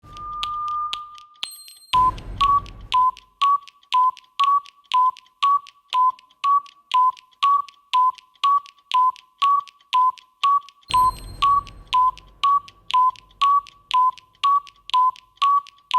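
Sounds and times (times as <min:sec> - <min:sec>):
timer ticking: 0:00.0 - 0:15.9
high ding: 0:01.4 - 0:02.4, 0:10.9 - 0:12.2.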